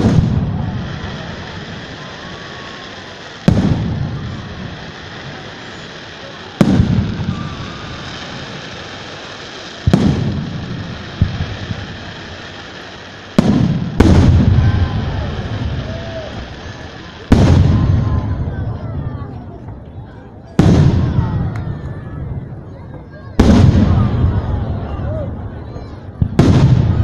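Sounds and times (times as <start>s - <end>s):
firework shells bursting: 0.0s - 18.3s.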